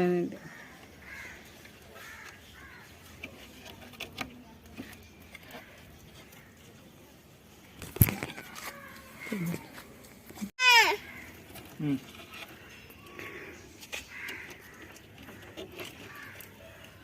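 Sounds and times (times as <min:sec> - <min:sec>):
birds chirping and squawking: 0:00.3 - 0:03.5, 0:10.9 - 0:17.0.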